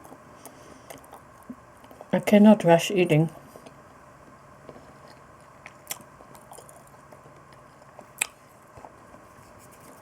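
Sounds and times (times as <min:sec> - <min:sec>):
chewing food: 0:00.0 - 0:02.1, 0:04.7 - 0:09.2.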